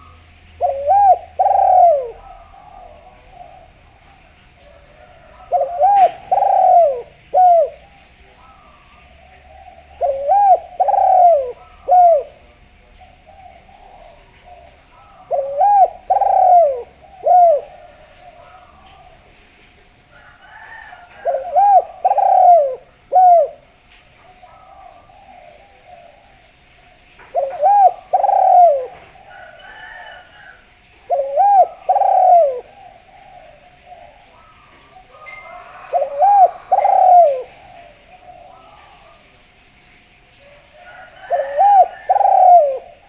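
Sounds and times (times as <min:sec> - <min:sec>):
dove cooing: 0:00.0 - 0:43.0
bird chirps: 0:29.7 - 0:39.1.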